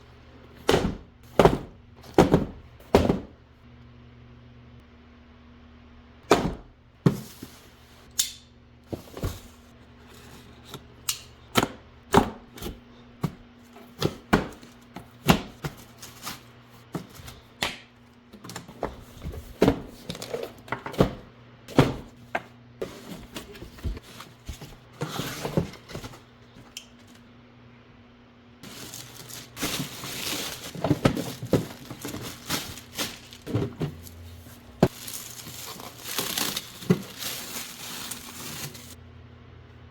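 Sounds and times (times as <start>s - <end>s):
plastic wrapping crinkling: 28.6s - 39.0s.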